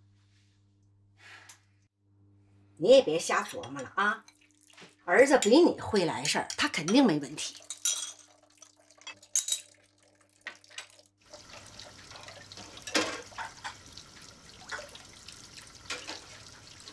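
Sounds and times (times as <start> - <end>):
dishes and cutlery clinking: 7.7 - 8.3, 9.0 - 9.8, 12.1 - 13.8
tap water splashing into sink: 10.3 - 16.9.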